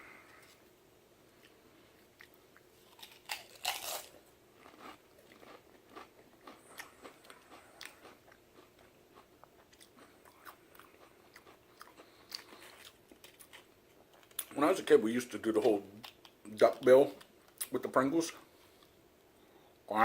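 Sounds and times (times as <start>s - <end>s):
potato crisps crunching: 2.1s - 14.8s.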